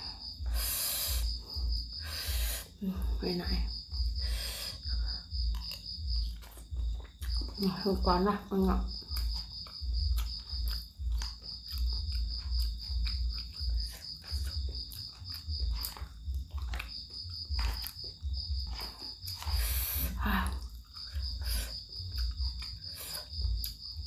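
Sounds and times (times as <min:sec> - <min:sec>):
slurping hiss: 0:00.0 - 0:02.8, 0:04.2 - 0:04.9, 0:19.4 - 0:20.4
chewing thuds with clicks: 0:09.0 - 0:19.6.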